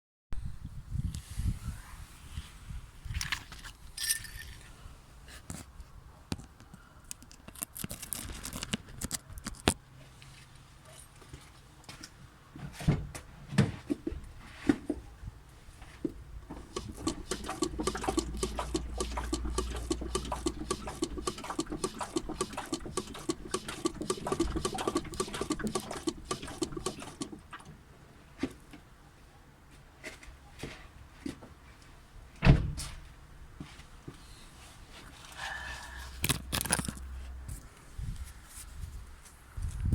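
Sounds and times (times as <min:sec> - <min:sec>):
car suspension knocking and squeaking: 0:16.6 - 0:27.5.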